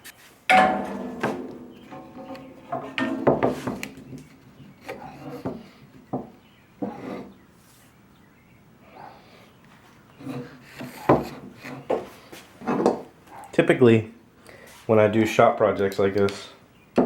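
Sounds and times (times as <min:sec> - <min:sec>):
wooden pieces knocking on workbench: 0:00.5 - 0:04.3.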